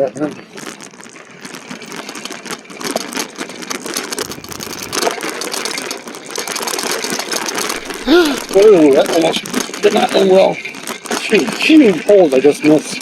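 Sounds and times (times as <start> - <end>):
fast steady rattle: 0.0 - 13.0
car engine running: 4.2 - 5.1.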